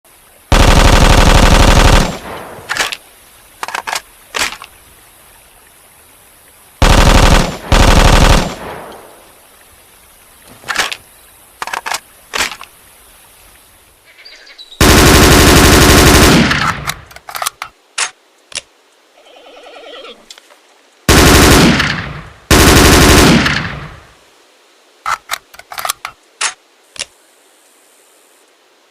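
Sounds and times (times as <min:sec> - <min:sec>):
automatic rifle fire: 0:00.5 - 0:02.4, 0:06.8 - 0:09.0, 0:14.8 - 0:17.0, 0:21.1 - 0:24.0.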